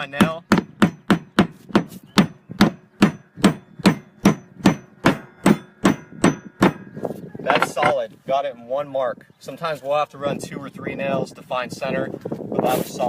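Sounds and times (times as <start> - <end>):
hammer striking nail into wood: 0.2 - 6.8.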